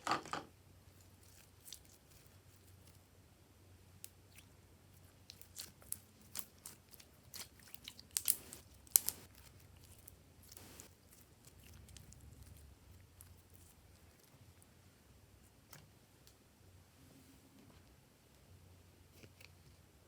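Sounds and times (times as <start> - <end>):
soft squelch: 4.0 - 14.7
slime clicking and popping: 5.3 - 9.3.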